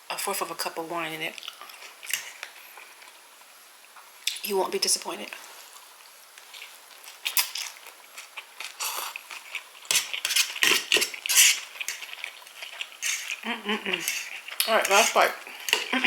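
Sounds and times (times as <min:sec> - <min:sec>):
cutlery clinking and scraping on dish: 0:09.9 - 0:12.2, 0:13.0 - 0:13.4, 0:14.0 - 0:15.9.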